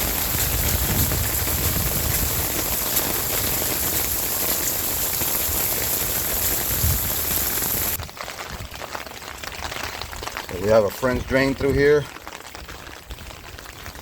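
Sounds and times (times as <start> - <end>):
raindrops hitting close by: 0.0 - 14.0
steady rain: 0.0 - 14.0.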